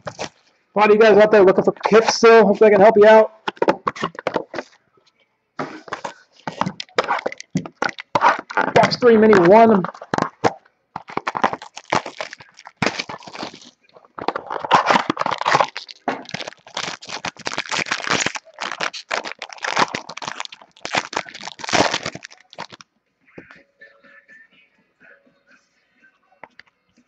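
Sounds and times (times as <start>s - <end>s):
packaging crinkling and tearing: 0.0s - 0.4s, 3.4s - 4.8s, 5.6s - 22.8s.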